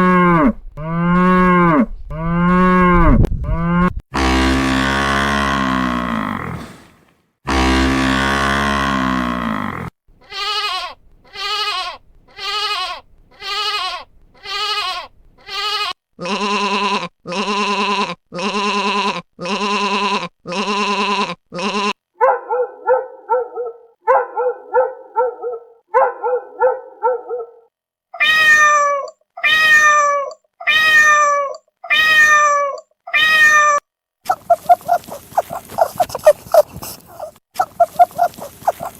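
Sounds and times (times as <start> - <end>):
animal calls: 28.2 - 38.9
quick chattering calls: 34.3 - 38.9.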